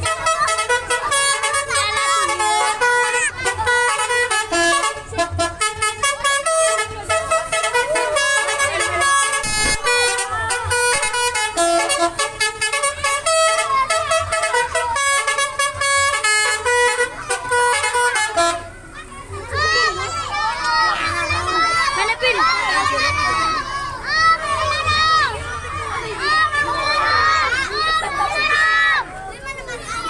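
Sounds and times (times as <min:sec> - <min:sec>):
bus horn playing a tune: 0:00.0 - 0:20.0.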